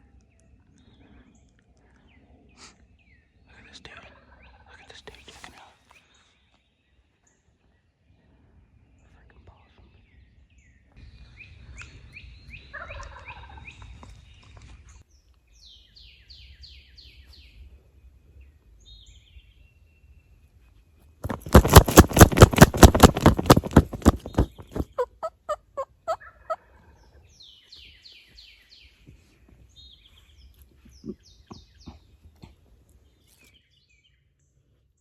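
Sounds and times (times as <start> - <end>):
turkey gobbling: 24.8 - 26.8.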